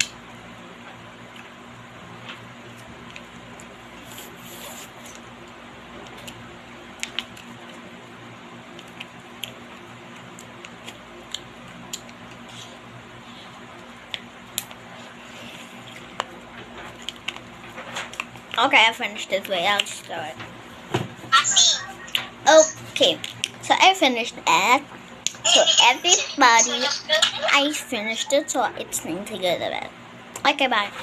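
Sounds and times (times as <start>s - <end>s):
steady background hiss: 25.4s - 29.9s.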